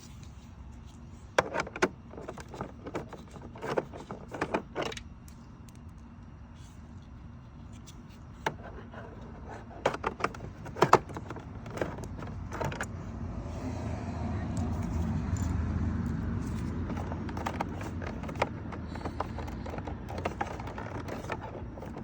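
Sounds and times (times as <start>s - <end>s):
low steady hum: 0.0s - 22.0s
clicks and knocks of tools: 14.5s - 22.0s.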